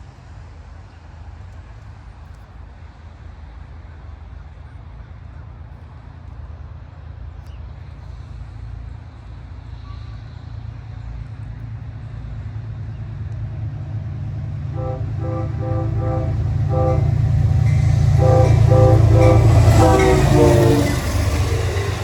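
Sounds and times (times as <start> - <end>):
diesel locomotive rumble: 10.3 - 22.0.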